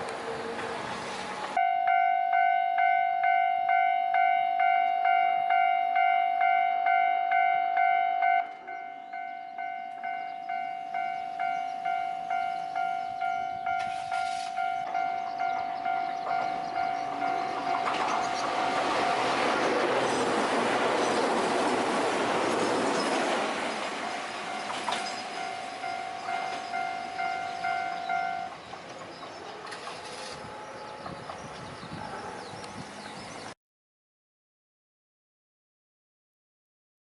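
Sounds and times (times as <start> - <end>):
approaching train noise: 0.0 - 33.6
level crossing warning bell: 1.5 - 19.8, 24.0 - 28.6, 29.2 - 32.7.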